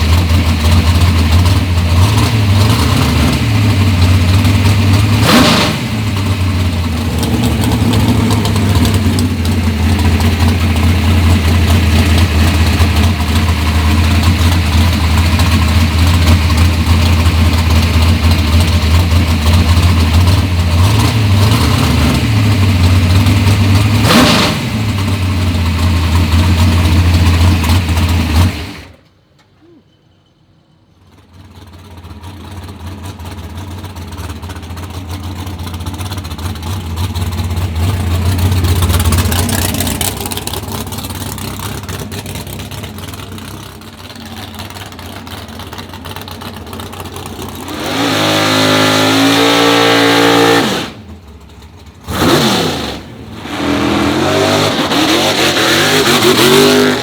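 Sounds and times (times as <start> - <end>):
drag car engine running loud: 0.0 - 29.1, 31.0 - 57.0
sharp engine bursts: 47.6 - 51.2, 52.0 - 57.0.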